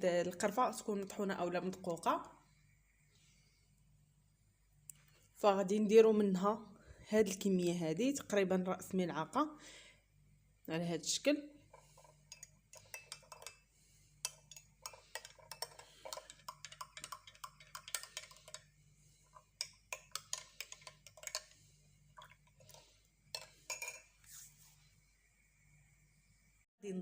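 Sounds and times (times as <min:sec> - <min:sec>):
spoon clinking on glass: 0:12.2 - 0:13.6, 0:14.2 - 0:18.7, 0:19.4 - 0:21.5, 0:23.3 - 0:24.1.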